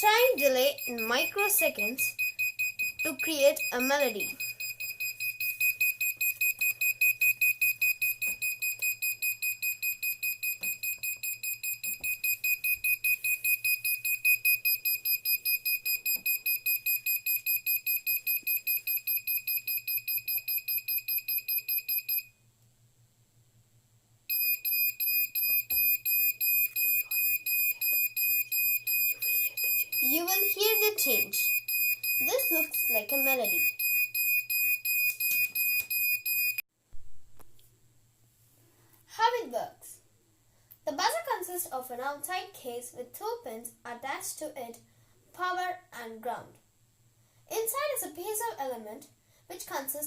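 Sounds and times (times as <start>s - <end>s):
high-pitched buzzer beeping: 0.0s - 22.3s, 24.3s - 36.6s.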